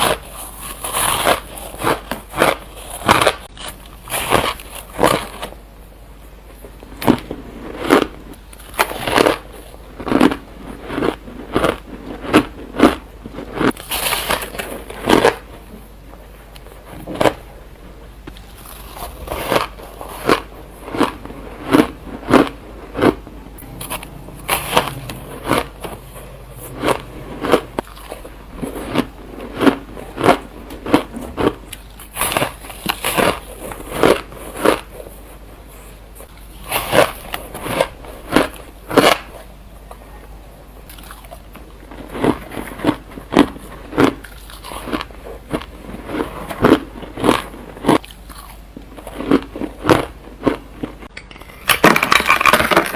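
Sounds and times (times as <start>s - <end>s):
person crunching ice cubes: 0.0s - 5.6s, 6.9s - 15.7s, 18.3s - 35.2s, 40.9s - 52.9s.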